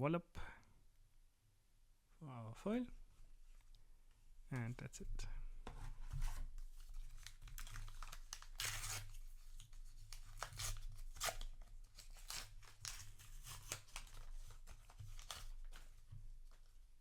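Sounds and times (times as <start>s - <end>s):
foil wrapper crinkling and tearing: 6.9s - 16.0s.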